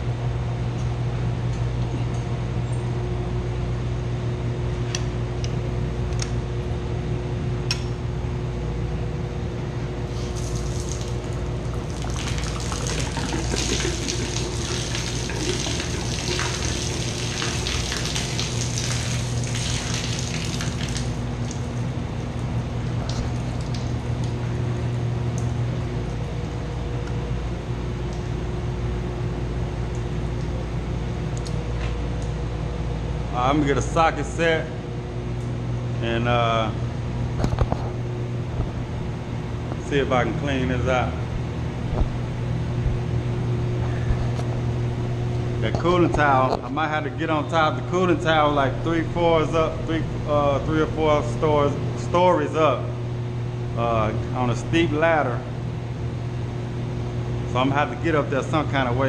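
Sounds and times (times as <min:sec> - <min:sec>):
pump motor humming: 0:10.0 - 0:31.5, 0:37.4 - 0:59.0.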